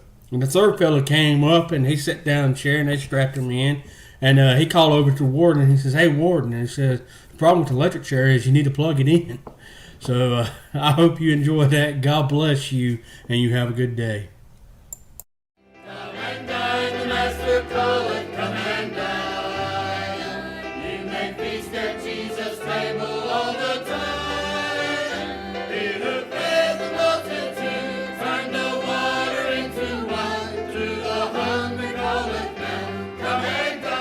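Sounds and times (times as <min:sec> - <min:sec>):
choir singing: 0:15.7 - 0:34.0.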